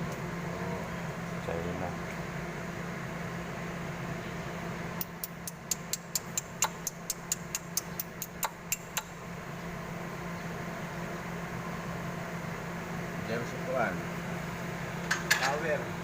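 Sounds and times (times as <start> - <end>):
sharp metallic clicks: 5.0 - 9.1.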